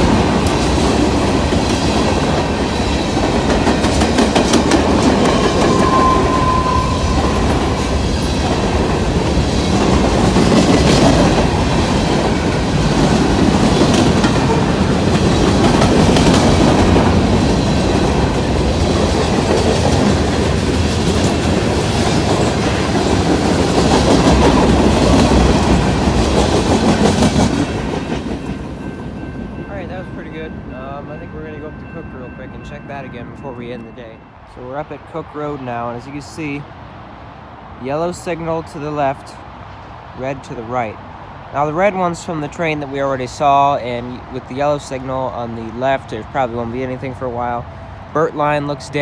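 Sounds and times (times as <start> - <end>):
train wheels clattering on rails: 0.0 - 34.2.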